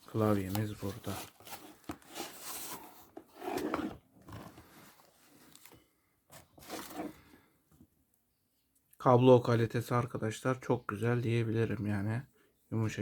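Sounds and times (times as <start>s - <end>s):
packaging rustling and crinkling: 0.0s - 7.2s.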